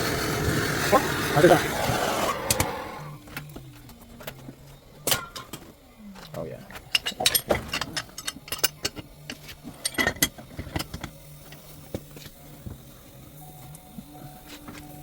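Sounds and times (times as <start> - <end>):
pipe wrench clicking on metal pipe: 6.8 - 11.6.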